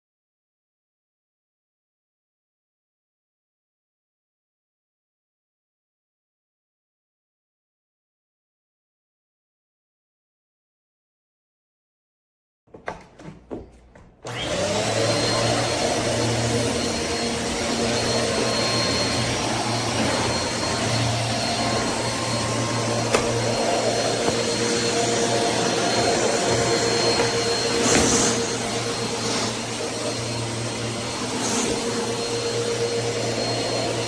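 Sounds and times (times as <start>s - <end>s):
vacuum cleaner running: 13.1s - 34.0s.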